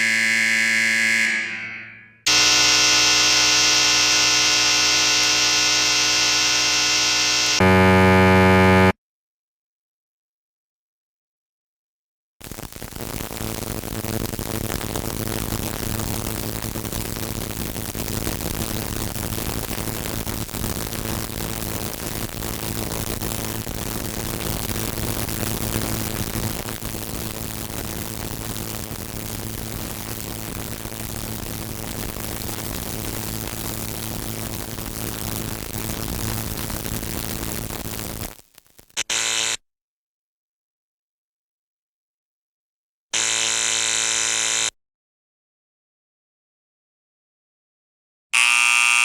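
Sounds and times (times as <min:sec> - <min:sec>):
electric buzzer buzzing: 0:00.0 - 0:09.0, 0:39.0 - 0:39.6, 0:43.2 - 0:44.7, 0:48.4 - 0:49.0.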